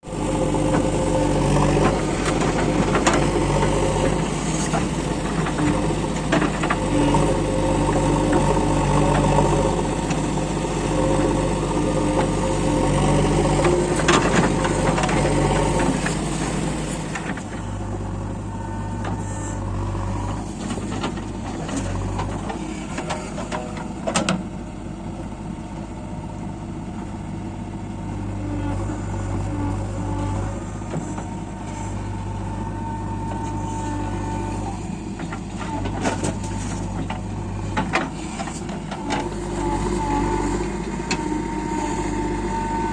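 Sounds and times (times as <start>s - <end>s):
diesel engine running: 0.0s - 42.9s
clanks and knocks: 35.1s - 39.8s.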